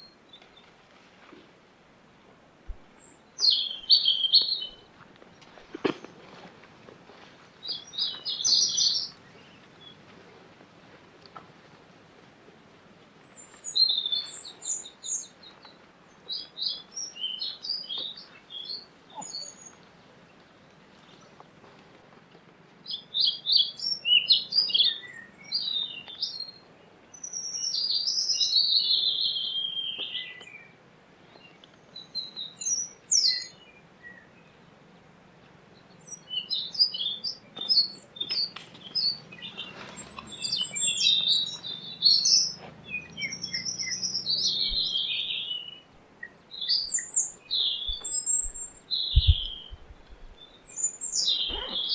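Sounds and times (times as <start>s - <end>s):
high-pitched chirping calls: 36.0s - 49.9s, 50.7s - 51.9s.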